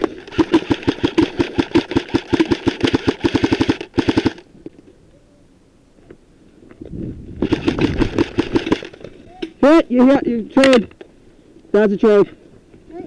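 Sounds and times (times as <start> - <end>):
airsoft rifle automatic fire: 0.0 - 4.5, 7.4 - 9.0.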